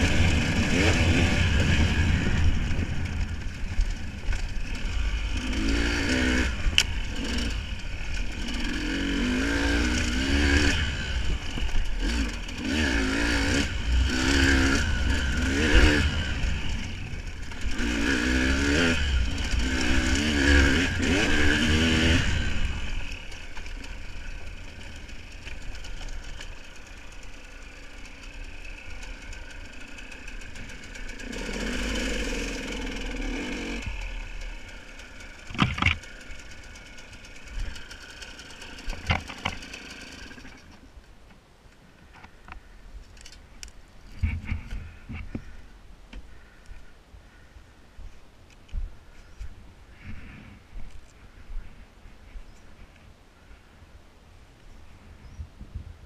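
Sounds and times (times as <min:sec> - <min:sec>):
engine revving: 0:00.0 - 0:40.8.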